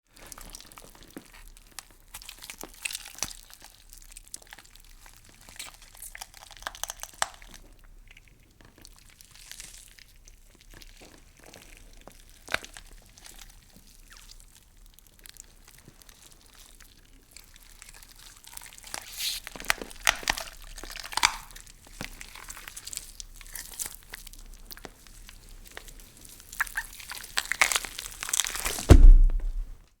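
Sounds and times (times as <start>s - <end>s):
wet meat squelching and crunching: 0.2s - 29.5s
heavy low thud: 28.7s - 29.8s.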